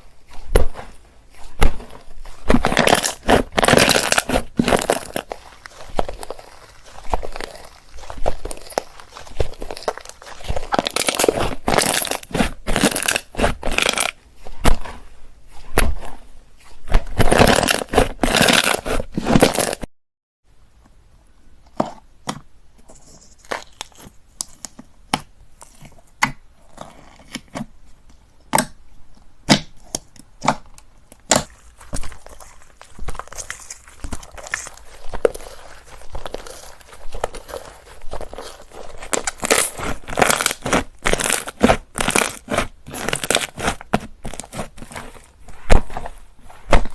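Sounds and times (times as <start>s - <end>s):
slime crackling and popping: 0.0s - 19.9s, 31.3s - 46.9s.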